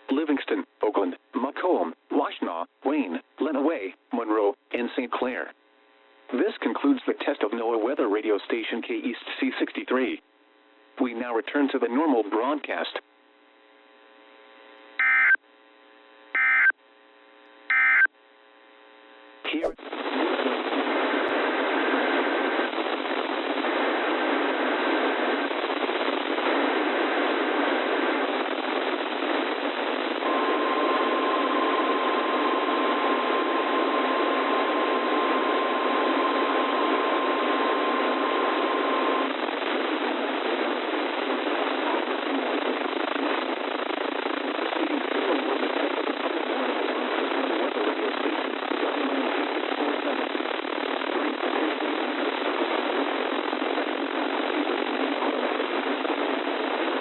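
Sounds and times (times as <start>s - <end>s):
radio static hiss: 0.0s - 15.4s, 16.1s - 16.8s, 17.5s - 57.0s
faint data bursts: 15.0s - 15.4s, 16.3s - 16.8s, 17.6s - 18.1s
steady warning alarm tone: 15.0s - 15.4s, 16.4s - 16.8s, 17.7s - 18.1s.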